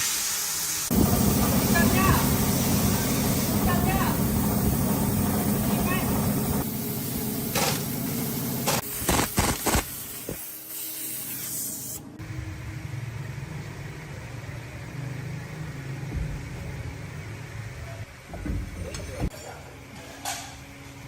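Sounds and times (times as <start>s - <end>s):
spray hiss: 0.0s - 12.1s
low steady hum: 0.9s - 8.7s.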